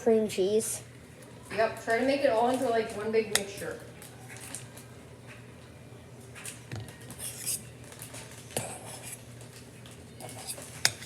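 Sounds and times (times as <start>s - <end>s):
fork scraping and tapping bowl: 10.2s - 11.0s.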